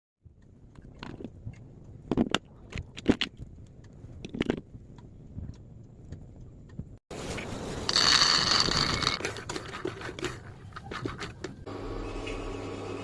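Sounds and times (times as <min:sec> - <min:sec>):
objects being handled clicking: 0:00.6 - 0:07.0.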